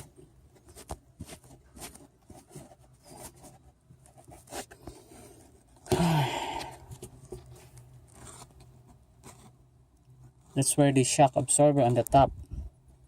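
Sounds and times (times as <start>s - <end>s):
handling clicks and scrapes: 0.0s - 5.9s, 6.7s - 10.7s.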